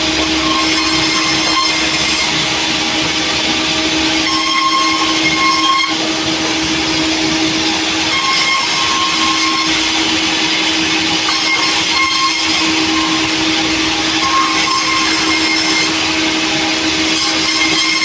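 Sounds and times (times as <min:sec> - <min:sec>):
saw whine: 0:00.0 - 0:18.0
sawmill machine drone: 0:00.0 - 0:18.0.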